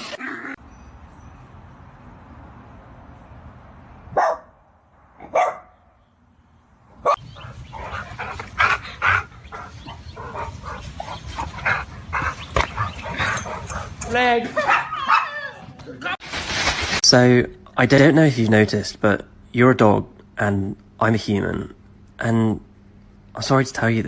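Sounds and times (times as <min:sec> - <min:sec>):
dog barking: 0:04.1 - 0:04.6, 0:05.2 - 0:05.8, 0:07.0 - 0:10.8, 0:14.6 - 0:15.6.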